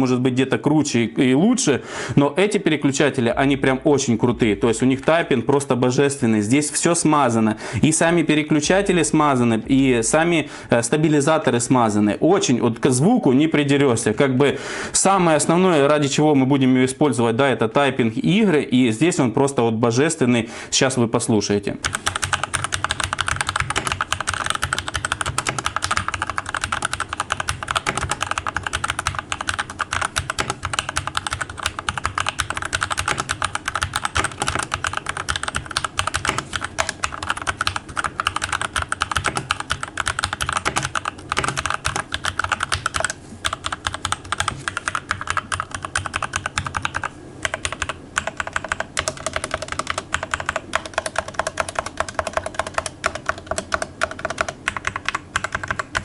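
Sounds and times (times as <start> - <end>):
mechanical keyboard typing: 21.8 - 56.0.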